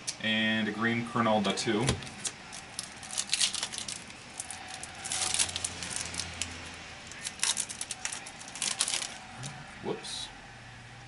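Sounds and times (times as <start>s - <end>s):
foil wrapper crinkling: 2.1s - 9.5s.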